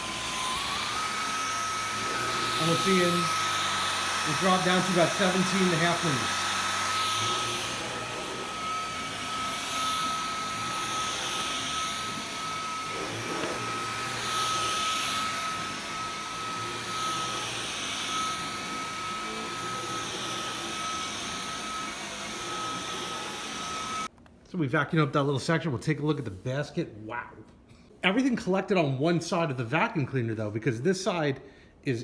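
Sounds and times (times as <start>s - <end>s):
vacuum cleaner on carpet: 0.0s - 24.1s.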